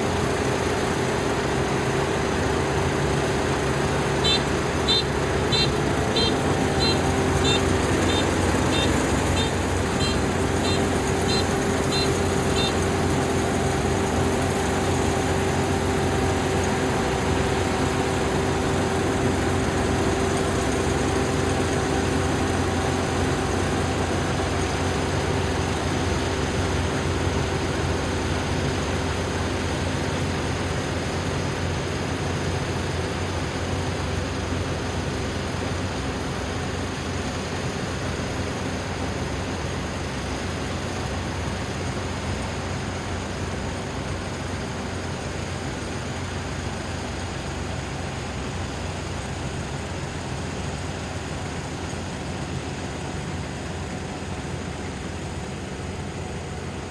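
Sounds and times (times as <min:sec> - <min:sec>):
combine harvester droning: 0:00.0 - 0:56.9
short high chirps: 0:04.2 - 0:12.8.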